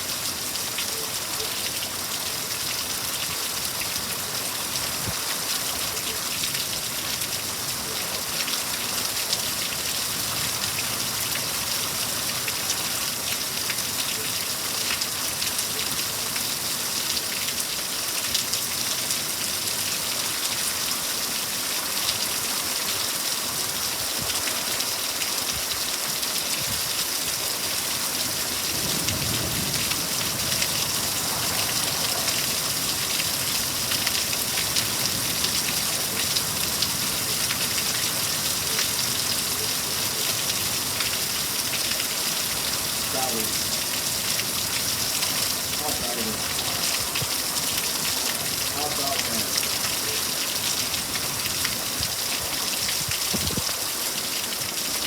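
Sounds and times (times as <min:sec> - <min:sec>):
heavy rain falling: 0:00.0 - 0:55.0
low thunder rumble: 0:28.5 - 0:34.0.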